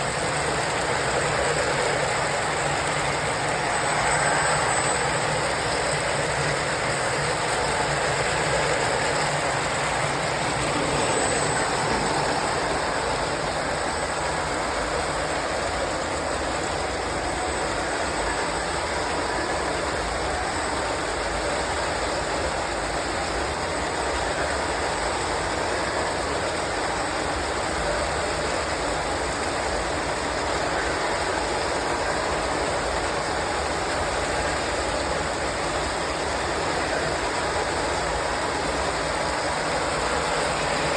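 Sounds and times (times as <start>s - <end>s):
model train running on track: 0.0s - 40.9s.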